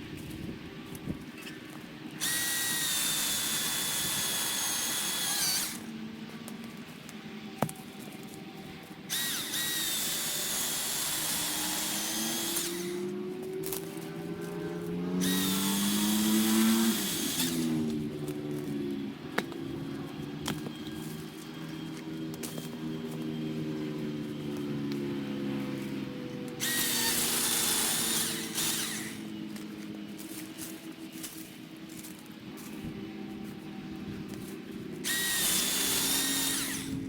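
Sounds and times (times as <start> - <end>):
chainsaw motor whining: 0.2 - 37.0
low hum rising in pitch: 12.6 - 26.8.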